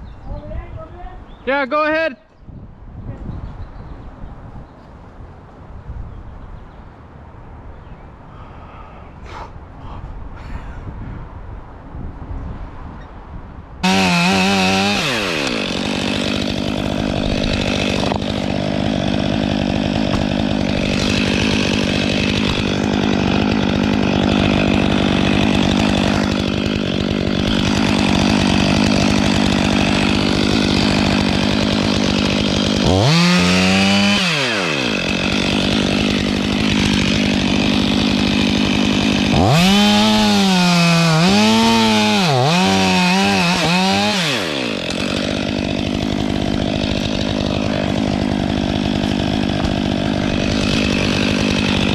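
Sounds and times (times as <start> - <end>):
chainsaw cutting wood: 13.8 - 51.9.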